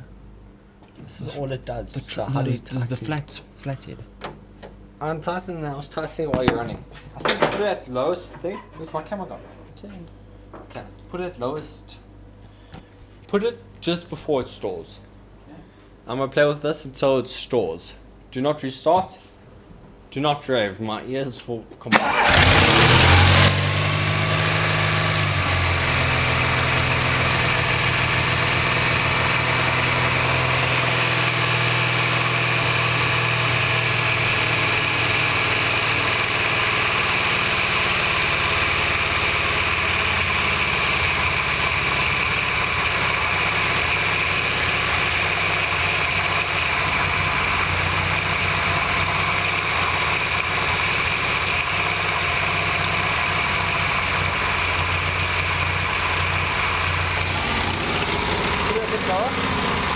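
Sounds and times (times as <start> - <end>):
car engine idling: 22.0 - 59.9.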